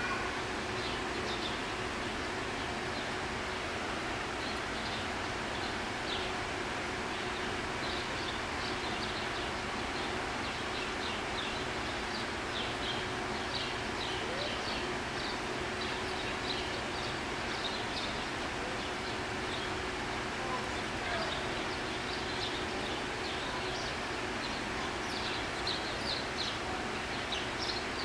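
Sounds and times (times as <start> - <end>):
small birds chirping: 0.8 - 1.7, 7.1 - 28.0.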